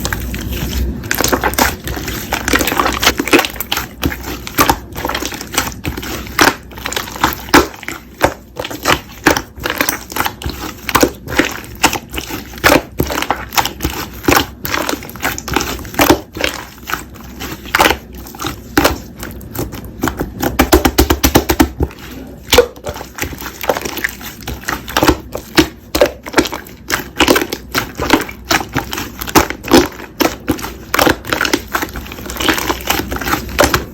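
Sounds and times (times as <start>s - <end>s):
slime crackling and popping: 0.0s - 33.9s.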